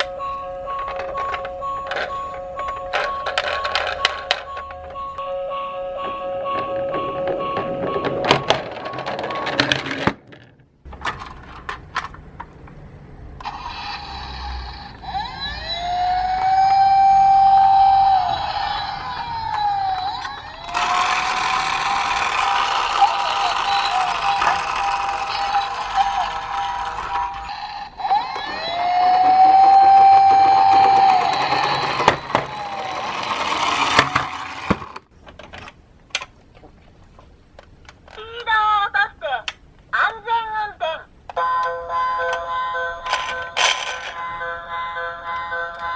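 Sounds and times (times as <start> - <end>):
police siren: 0.0 - 9.6, 13.5 - 34.2
toy car rattling down plastic slope: 2.9 - 4.5, 6.5 - 10.5, 17.2 - 35.0, 43.1 - 44.2.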